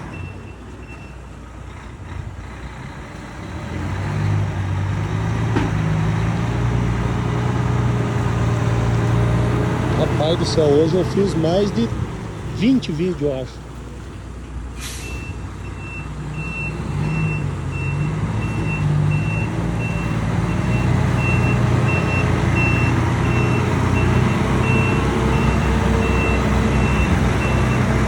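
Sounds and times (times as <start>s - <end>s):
truck diesel engine rumbling: 0.0s - 28.0s
reversing beeper: 15.0s - 27.9s.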